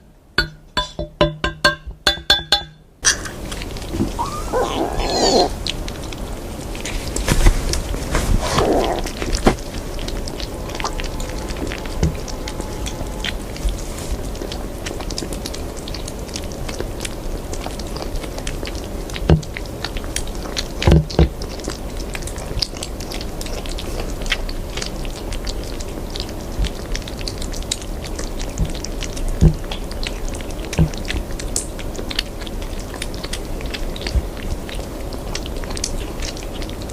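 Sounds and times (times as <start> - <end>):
steady background hum: 0.0 - 36.9
kitten chewing crunchily: 3.3 - 36.9.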